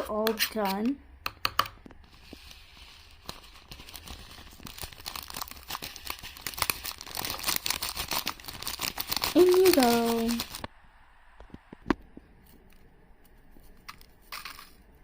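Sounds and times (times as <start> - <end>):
crinkling and crackling handling: 1.9 - 10.7.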